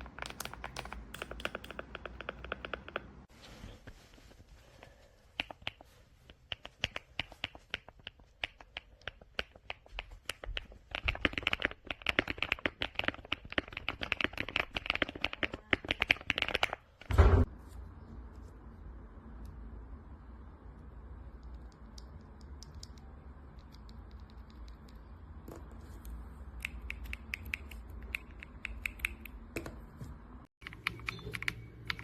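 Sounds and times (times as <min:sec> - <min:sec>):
mechanical keyboard typing: 0:00.0 - 0:03.1, 0:10.4 - 0:16.9, 0:30.6 - 0:32.0
loud deep thump: 0:17.1 - 0:17.5.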